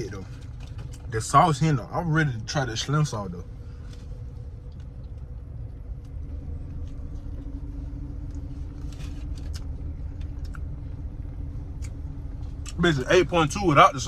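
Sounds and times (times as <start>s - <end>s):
faint clicks and rustles: 0.0s - 1.2s, 3.4s - 12.8s
car engine idling: 0.0s - 14.0s
faint steady hum: 0.0s - 14.0s.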